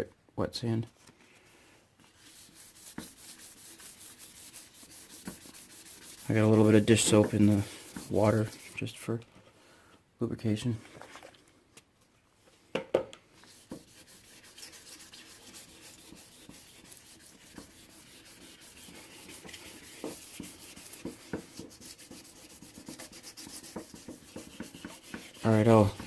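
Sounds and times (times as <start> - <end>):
sandpaper scrubbing plastic: 2.1 - 8.9, 13.4 - 26.0.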